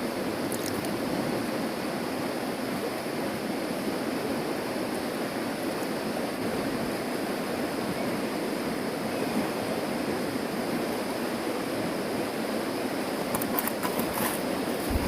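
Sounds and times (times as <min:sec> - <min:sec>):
fast-flowing river rushing: 0:00.0 - 0:15.0.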